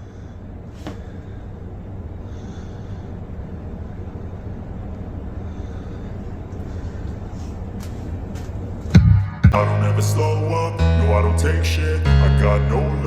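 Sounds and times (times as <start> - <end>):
vehicle engine rumble: 8.4 - 13.0.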